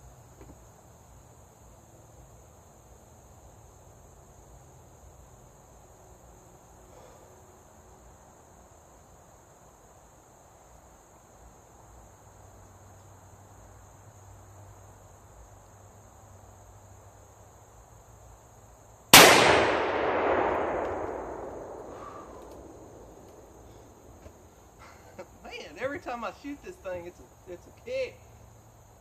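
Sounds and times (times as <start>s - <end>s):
crickets chirping: 0.0s - 29.0s
loud gunshot with echo: 19.2s - 23.2s.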